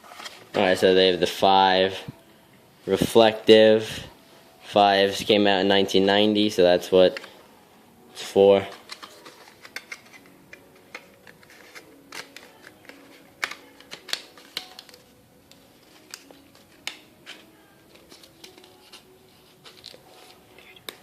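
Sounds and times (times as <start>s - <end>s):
paper and box crinkling and tapping: 8.6s - 21.0s.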